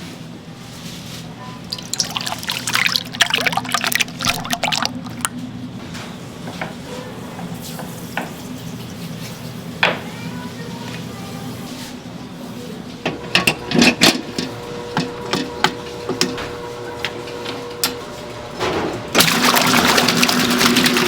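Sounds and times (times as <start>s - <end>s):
low machine hum: 0.0s - 21.0s
liquid splashing and pouring: 1.7s - 5.3s.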